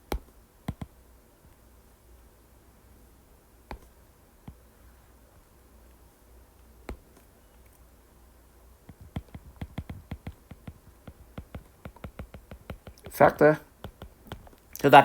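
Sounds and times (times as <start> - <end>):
keyboard key clicks: 8.9 - 13.1.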